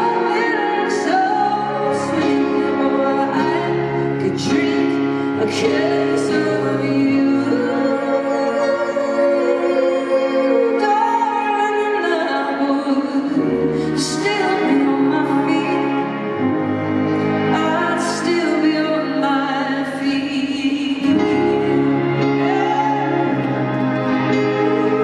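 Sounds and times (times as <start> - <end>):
woman singing a ballad: 0.0 - 25.0
band playing: 21.0 - 25.0.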